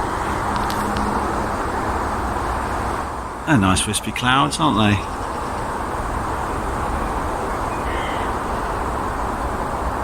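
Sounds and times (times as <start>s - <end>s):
outdoor background rumble: 0.0s - 10.0s
faint crow caw: 7.6s - 8.8s.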